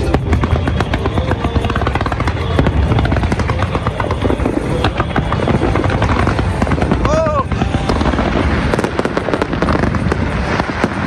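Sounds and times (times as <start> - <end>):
fireworks popping and crackling: 0.0 - 11.0
low rumble: 0.0 - 11.0.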